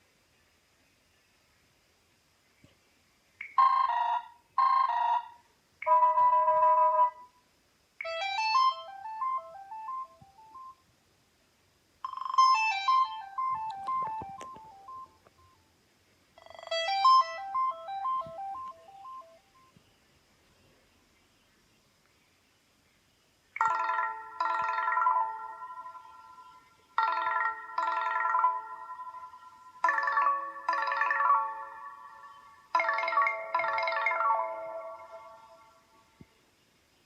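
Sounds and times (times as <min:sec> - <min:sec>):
bell-like ringtone melody: 0:03.5 - 0:07.3, 0:08.0 - 0:10.8, 0:12.1 - 0:15.2, 0:16.4 - 0:19.7, 0:23.6 - 0:35.8
short electronic tones: 0:08.0 - 0:10.8, 0:12.1 - 0:15.6, 0:16.4 - 0:19.7.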